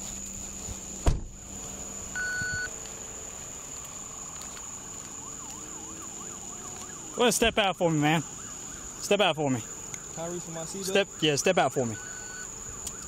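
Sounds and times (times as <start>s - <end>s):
police siren yelping: 4.8s - 13.0s
short electronic beep: 11.9s - 12.5s.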